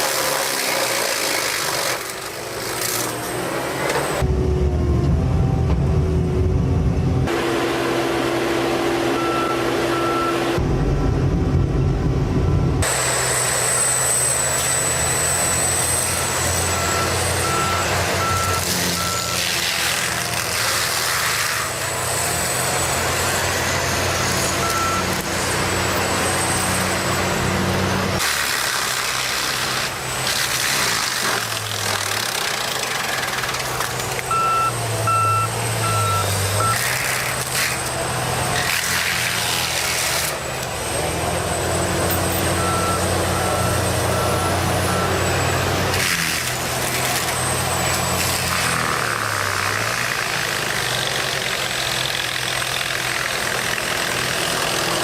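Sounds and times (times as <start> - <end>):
heavy vehicle engine running: 0.0 - 55.0
reversing alarm beeping: 9.1 - 10.6, 12.3 - 19.4, 24.1 - 25.3, 34.2 - 37.0, 41.5 - 45.8.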